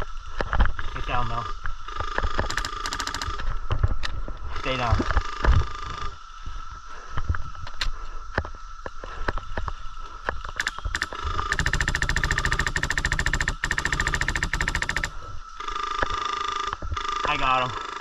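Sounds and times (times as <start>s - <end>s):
airsoft rifle firing: 10.6s - 15.2s.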